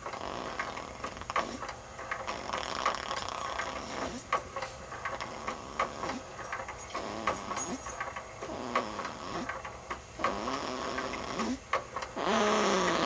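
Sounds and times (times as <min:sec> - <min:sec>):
baby snoring: 0:00.2 - 0:01.6, 0:02.3 - 0:04.2, 0:05.2 - 0:06.3, 0:07.0 - 0:07.5, 0:08.5 - 0:09.5, 0:10.2 - 0:11.6, 0:12.2 - 0:13.0.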